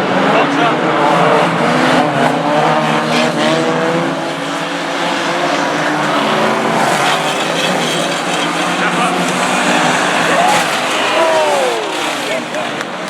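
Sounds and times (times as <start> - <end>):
racing car engines revving: 0.0 - 13.0.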